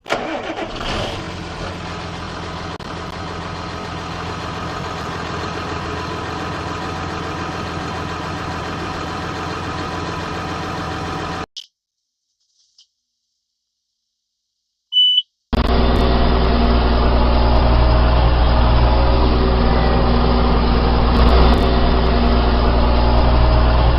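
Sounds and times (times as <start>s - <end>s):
tractor diesel engine running: 0.0s - 11.4s, 15.6s - 23.9s
faint short high beep: 14.9s - 15.3s.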